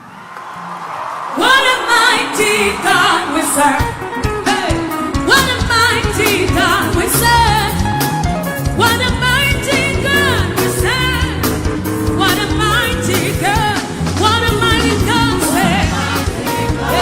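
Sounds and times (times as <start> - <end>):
gospel worship music: 0.4 - 17.0
lead voice singing: 1.4 - 7.8, 12.2 - 17.0.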